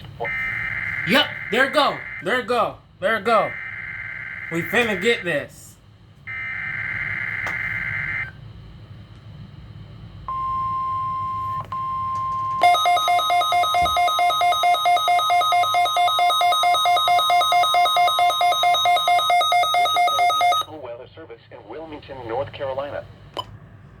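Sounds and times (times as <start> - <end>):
steady single-pitch alert tone: 12.6 - 20.7.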